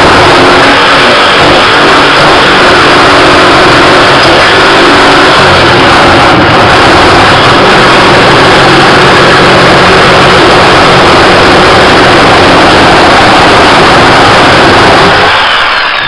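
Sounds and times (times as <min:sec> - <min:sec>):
jigsaw cutting metal: 0:00.0 - 0:16.0.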